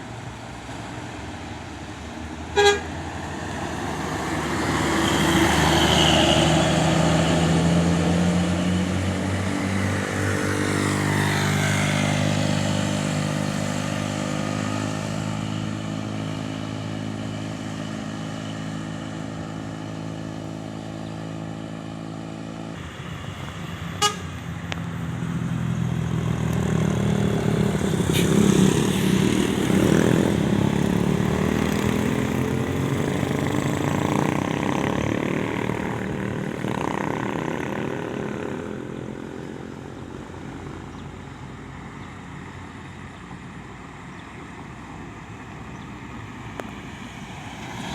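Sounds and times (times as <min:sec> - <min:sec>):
bus engine noise: 0:00.0 - 0:47.9
bus horns: 0:02.5 - 0:03.2, 0:23.9 - 0:24.6.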